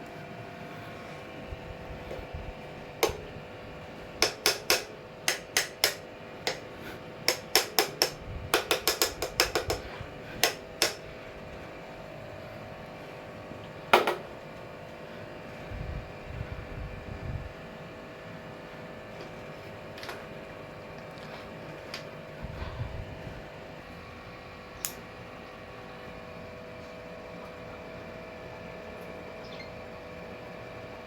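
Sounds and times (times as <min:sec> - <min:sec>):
ceiling fan clicking: 0:01.4 - 0:12.0, 0:19.1 - 0:24.0, 0:24.7 - 0:25.2.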